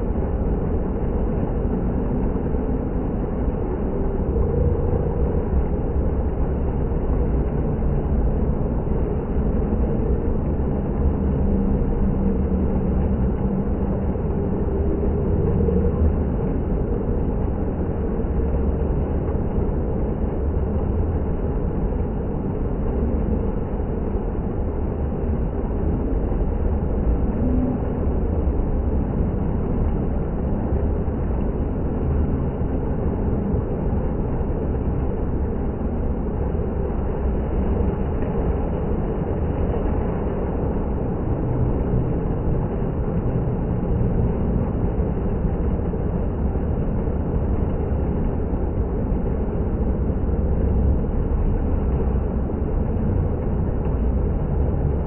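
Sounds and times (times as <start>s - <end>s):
indoor water fountain running: 0.0s - 55.0s.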